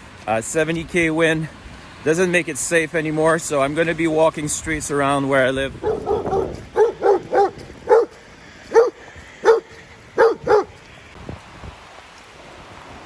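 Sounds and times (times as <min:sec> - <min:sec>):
dog barking: 0:05.8 - 0:10.8.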